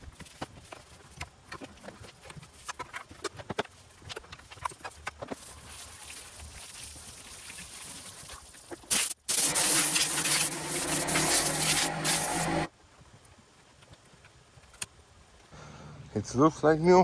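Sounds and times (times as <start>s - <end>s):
water spraying hiss: 5.4s - 12.7s.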